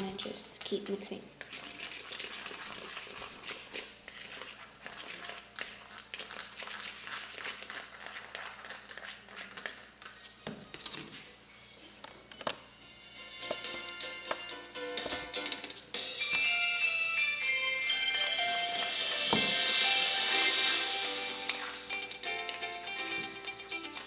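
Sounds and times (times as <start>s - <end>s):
slime squishing: 0.0s - 11.2s.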